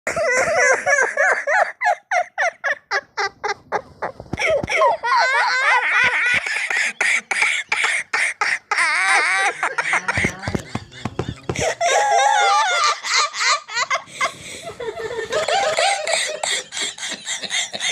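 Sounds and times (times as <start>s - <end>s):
boys laughing: 0.1s - 17.9s.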